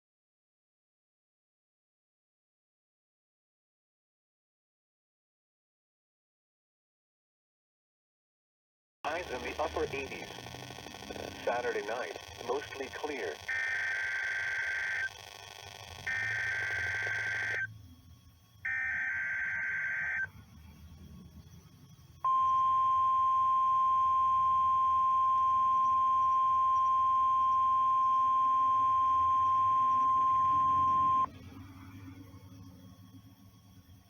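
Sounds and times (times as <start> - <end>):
digital header data bursts: 9.1 - 17.7, 18.7 - 20.3
steady warning alarm tone: 9.1 - 17.7, 18.6 - 20.4, 22.2 - 31.3.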